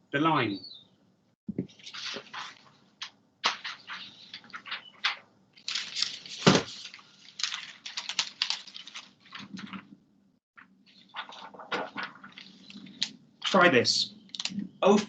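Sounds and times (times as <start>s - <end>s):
crackling clicks and rustles: 1.6s - 10.0s, 10.6s - 15.0s.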